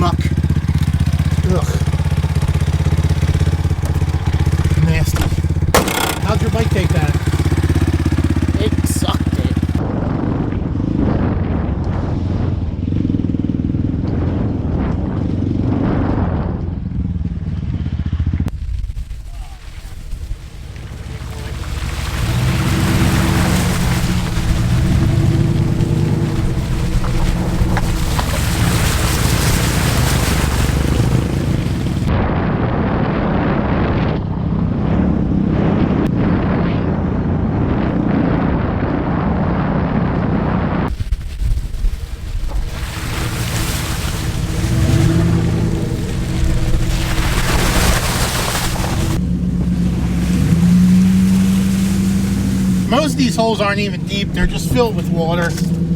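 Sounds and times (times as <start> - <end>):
pickup engine under load: 0.0 - 9.8, 20.4 - 32.1, 42.5 - 55.9
water splashing: 0.0 - 9.8, 19.0 - 32.2, 40.9 - 55.9
tyres rushing through mud: 0.0 - 16.4, 18.8 - 55.9.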